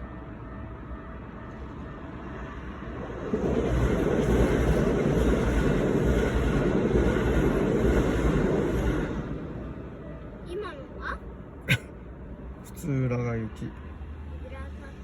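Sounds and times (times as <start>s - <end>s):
train wheels rumbling on rails: 2.8s - 10.0s.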